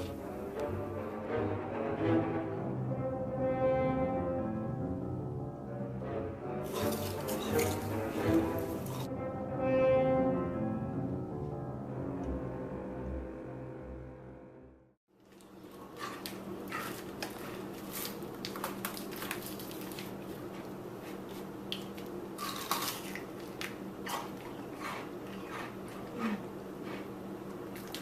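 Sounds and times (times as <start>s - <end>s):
steady low hum: 15.4s - 28.0s.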